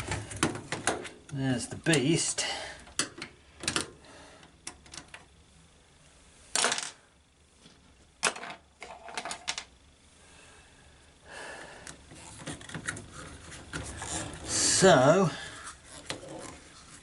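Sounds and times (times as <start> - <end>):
rustling scrape: 12.1 - 14.8, 15.4 - 17.0.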